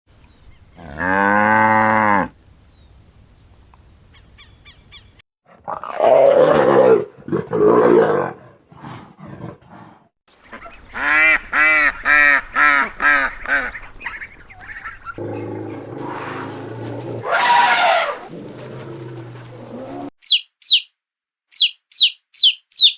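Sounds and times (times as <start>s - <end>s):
rough noisy animal calls: 10.5s - 20.8s.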